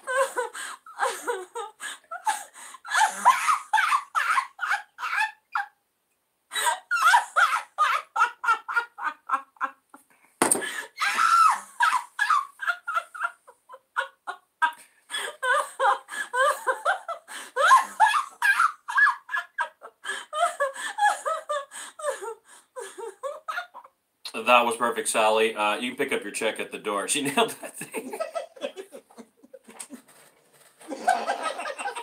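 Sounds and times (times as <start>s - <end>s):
woman giggling: 11.8s - 23.9s, 27.8s - 30.1s, 30.8s - 32.0s.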